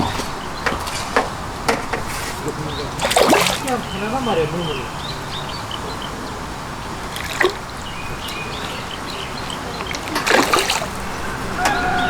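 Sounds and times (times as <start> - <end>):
sharp knocks or splashes: 0.0 - 4.1, 7.0 - 11.8
water trickling and dripping: 0.0 - 11.8.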